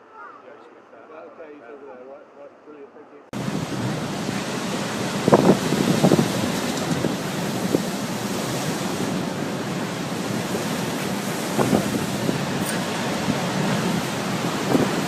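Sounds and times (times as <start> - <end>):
heavy surf: 3.4 - 15.0
storm wind: 3.4 - 15.0
wind buffeting microphone: 3.4 - 15.0.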